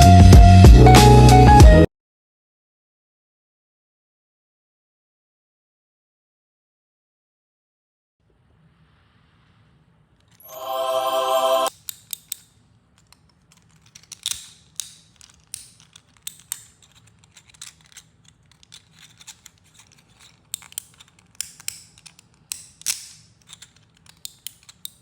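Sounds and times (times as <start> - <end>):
plastic object clicking and snapping: 11.7 - 25.0
plastic scraping: 12.1 - 25.0.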